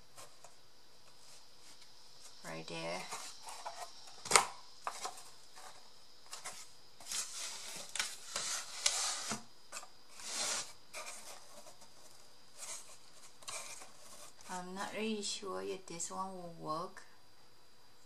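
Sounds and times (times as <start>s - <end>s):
cardboard rustling and scraping: 0.0s - 14.7s.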